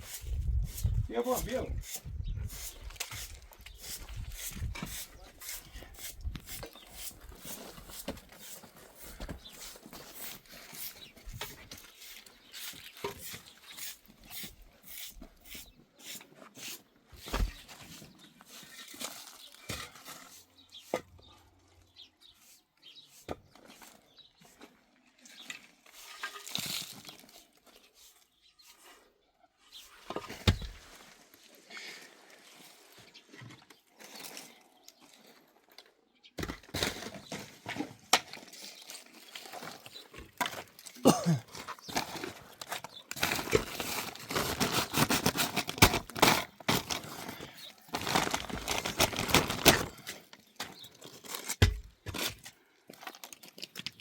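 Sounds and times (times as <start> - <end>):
rustling and crinkling: 17.2 - 29.0, 29.6 - 54.0.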